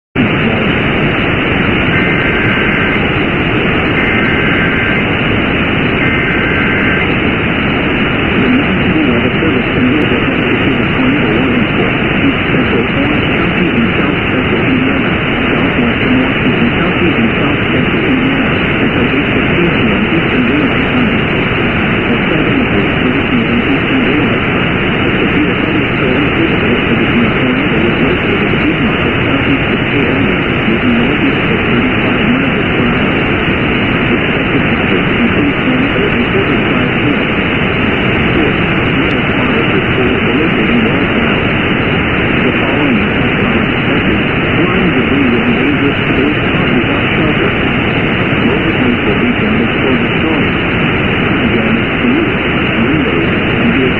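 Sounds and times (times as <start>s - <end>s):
loud radio static: 0.0s - 53.9s.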